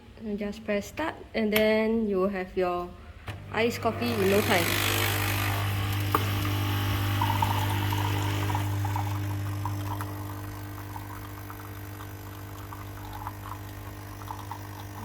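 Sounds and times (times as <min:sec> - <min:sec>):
coffee machine pump humming: 0:03.2 - 0:15.0
coffee streaming into cup: 0:03.8 - 0:15.0.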